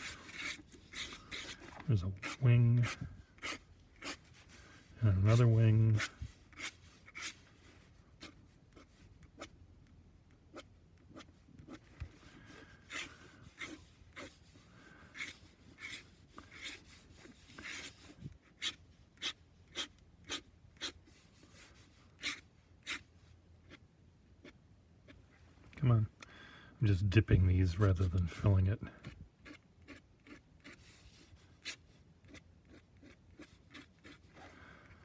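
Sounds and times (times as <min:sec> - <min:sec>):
fountain pen scratching paper: 0:00.0 - 0:07.4, 0:08.2 - 0:09.5, 0:10.5 - 0:11.8, 0:12.5 - 0:23.8, 0:29.4 - 0:34.4.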